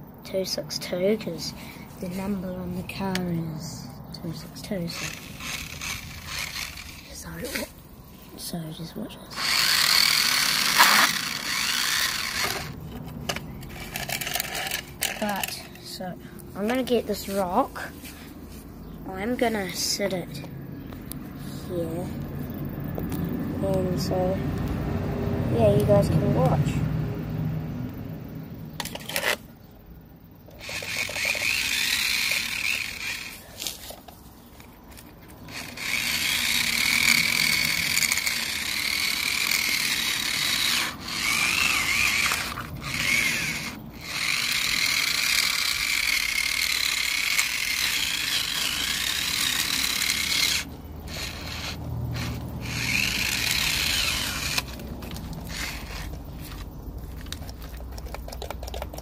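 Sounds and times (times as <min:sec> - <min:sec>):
tyres scraping in dirt: 0:00.8 - 0:08.6, 0:09.3 - 0:20.4, 0:30.5 - 0:59.0
toy car motor whining: 0:04.3 - 0:07.7, 0:09.3 - 0:16.0, 0:28.8 - 0:29.5, 0:30.5 - 0:34.0, 0:35.3 - 0:59.0.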